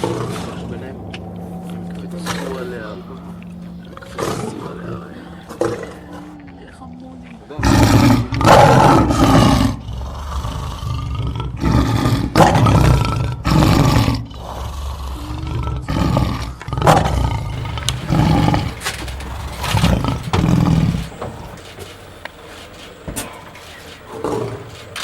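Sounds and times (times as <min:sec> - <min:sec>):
lion roaring: 0:00.0 - 0:25.0.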